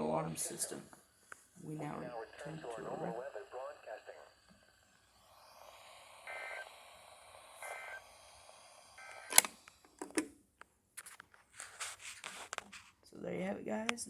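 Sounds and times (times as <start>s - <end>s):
faint hiss: 0.0s - 10.0s
two-tone data bursts: 6.2s - 6.8s, 7.6s - 8.1s, 9.0s - 9.4s
sharp click: 9.2s - 10.2s.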